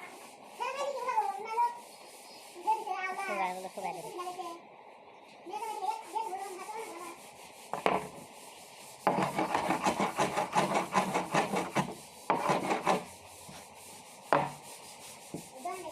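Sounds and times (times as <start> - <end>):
hand scraping wood: 5.7 - 15.9.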